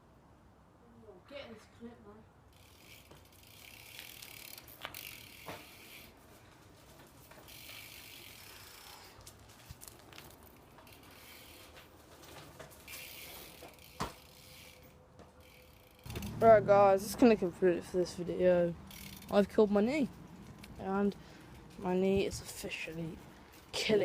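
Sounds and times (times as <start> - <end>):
bike hub clicking: 2.5 - 6.1, 7.2 - 11.9, 12.8 - 16.7, 18.7 - 21.7.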